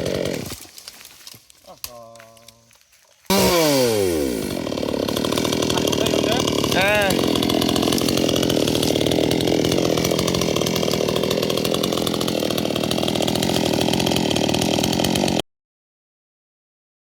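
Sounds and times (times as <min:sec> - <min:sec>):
chainsaw cutting wood: 0:00.0 - 0:01.4, 0:03.3 - 0:15.4.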